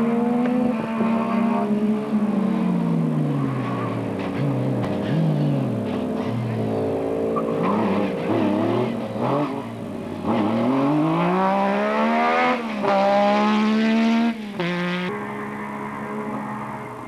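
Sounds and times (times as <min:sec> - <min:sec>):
rally car engine accelerating: 0:00.0 - 0:17.0.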